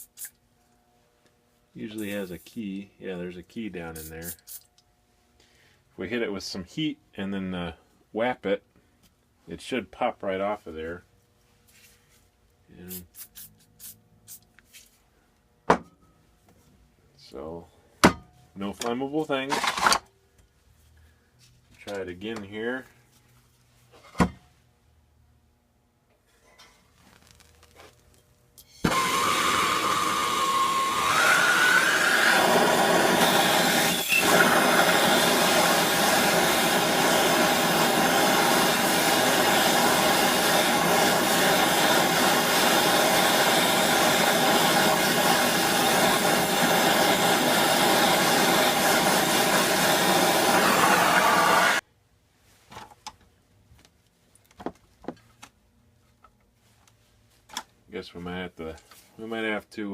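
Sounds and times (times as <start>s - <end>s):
gas torch hissing: 28.8s - 51.8s.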